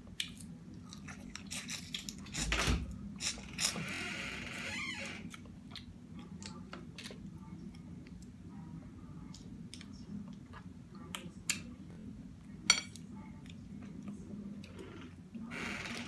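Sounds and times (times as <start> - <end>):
low steady hum: 0.0 - 16.0
chewing: 0.1 - 2.5, 5.2 - 8.4.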